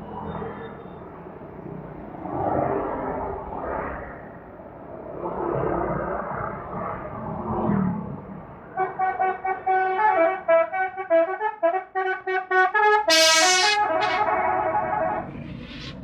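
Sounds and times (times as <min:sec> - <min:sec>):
engine and traffic rumble: 0:00.0 - 0:16.0
multi-tone musical air horn: 0:08.8 - 0:16.0.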